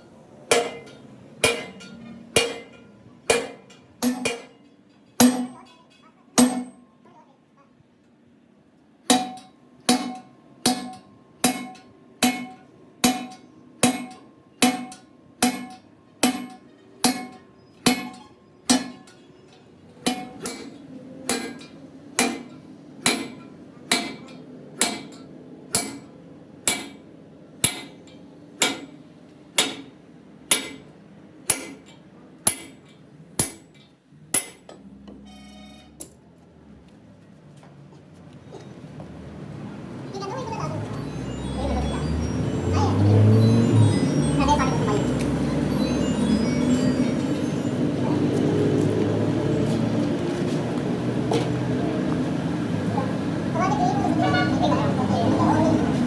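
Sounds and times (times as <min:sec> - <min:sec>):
hammer ringing on steel: 0:00.5 - 0:06.9, 0:09.1 - 0:29.0, 0:29.6 - 0:33.7.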